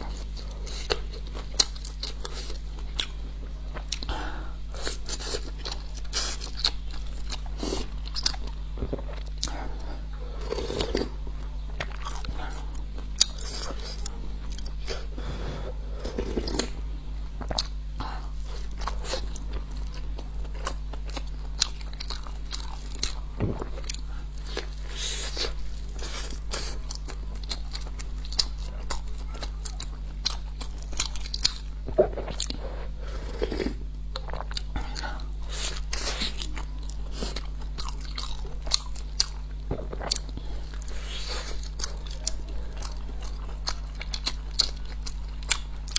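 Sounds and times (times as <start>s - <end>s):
steady low hum: 0.0s - 45.9s
person biting and chewing food: 17.4s - 45.9s.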